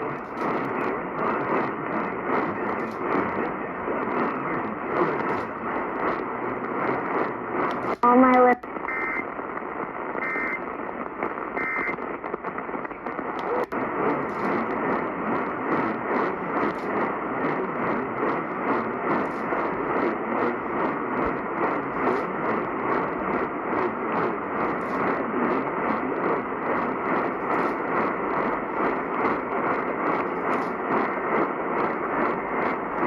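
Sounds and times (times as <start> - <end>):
faint regular pulsing: 0.0 - 33.0
radio static hiss: 0.0 - 33.0
short data tone bursts: 8.3 - 9.3, 10.2 - 10.6, 11.6 - 12.0.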